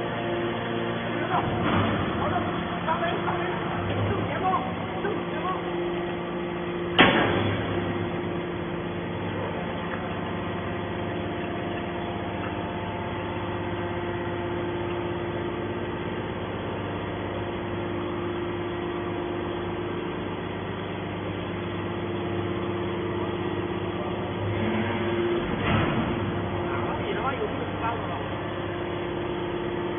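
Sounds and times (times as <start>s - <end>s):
hydraulic power unit drone: 0.0s - 29.9s.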